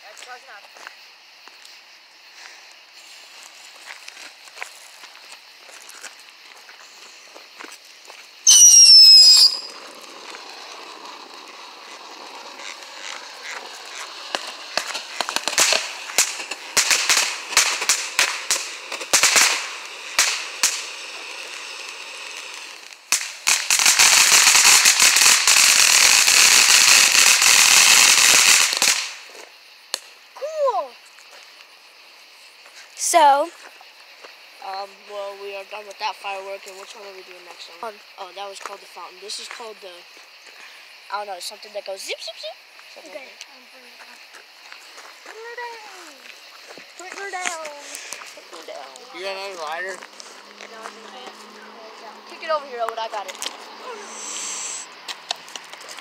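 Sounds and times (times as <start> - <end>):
firework hissing and crackling: 0.0 - 56.0
firework falling whistle: 8.4 - 29.3, 53.8 - 55.5.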